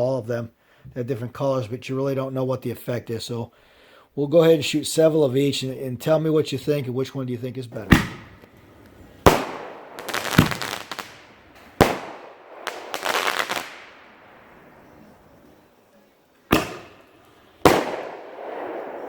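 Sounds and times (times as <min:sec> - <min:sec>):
firework shell bangs: 0:07.8 - 0:08.5, 0:09.2 - 0:14.2, 0:16.5 - 0:19.0
rumbling echo: 0:07.8 - 0:15.4, 0:16.5 - 0:19.0
firework crackling: 0:07.8 - 0:15.5, 0:16.5 - 0:19.0.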